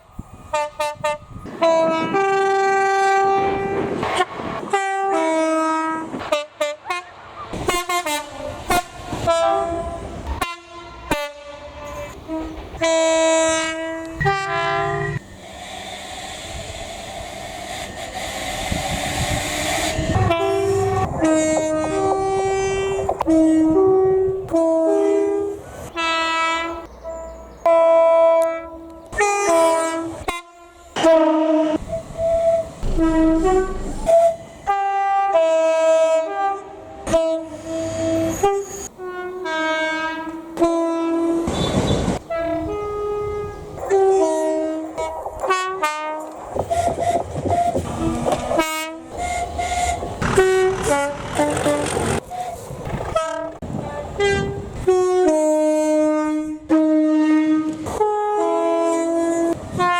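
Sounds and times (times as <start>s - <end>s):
train running noise: 0.0s - 59.9s
two-tone train air horn blasts: 0.4s - 15.6s, 17.9s - 26.9s, 27.6s - 52.5s, 53.2s - 59.9s.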